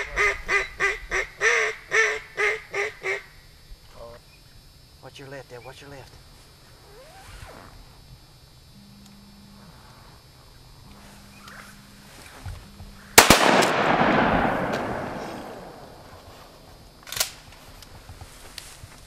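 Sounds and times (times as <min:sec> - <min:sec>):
shotgun shot echoing: 0:13.2 - 0:16.1
sharp crack: 0:13.2 - 0:16.3.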